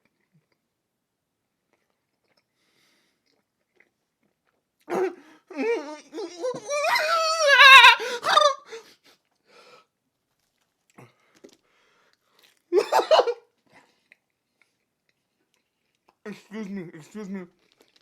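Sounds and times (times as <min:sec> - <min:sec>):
man warbling moan: 0:04.9 - 0:08.8.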